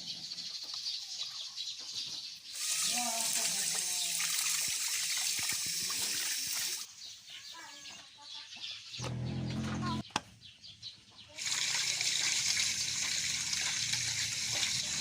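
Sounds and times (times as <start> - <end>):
water pouring: 2.6 - 6.9, 11.4 - 15.0.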